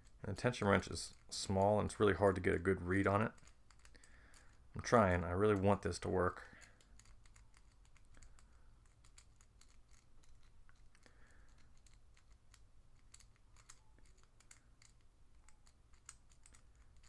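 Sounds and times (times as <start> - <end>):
lock pick clicking in padlock: 6.6 - 17.0.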